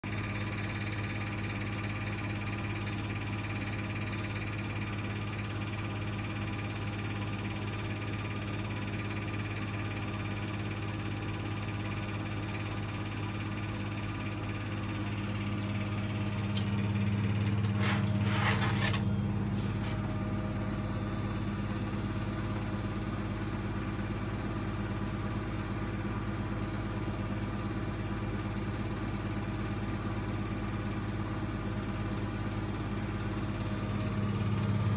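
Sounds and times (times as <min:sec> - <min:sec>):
washing machine spinning hum: 0:00.0 - 0:34.9.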